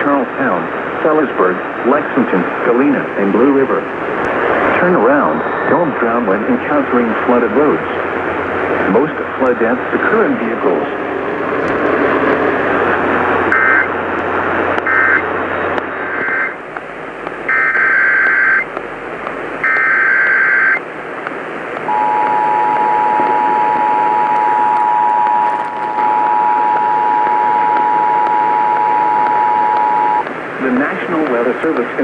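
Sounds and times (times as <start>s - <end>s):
radio hiss: 0.0s - 32.0s
warbling data tones: 14.8s - 20.9s, 21.8s - 31.8s
two-tone attention signal: 21.9s - 30.3s.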